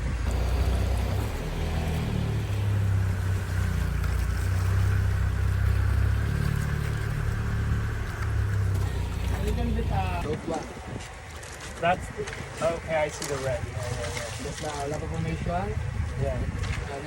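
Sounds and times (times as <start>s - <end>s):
motorboat engine droning: 0.0s - 11.6s
water noise: 0.0s - 17.0s
wind: 0.0s - 17.0s.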